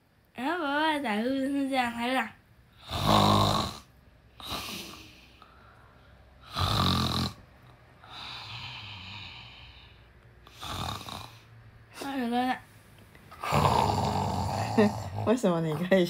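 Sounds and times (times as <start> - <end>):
child imitating snoring: 2.8 - 5.2, 6.4 - 7.4, 10.5 - 11.5, 13.4 - 15.4.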